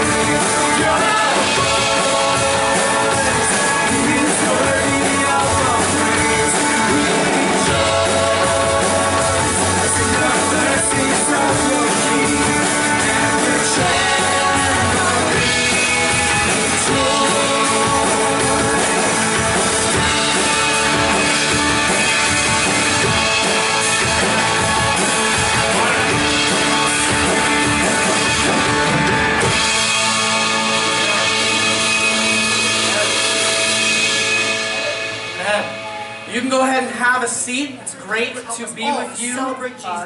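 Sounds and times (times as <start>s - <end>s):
person singing: 0.0s - 19.2s
drums: 0.0s - 40.0s
guitar: 0.0s - 40.0s
worship band playing: 0.0s - 40.0s.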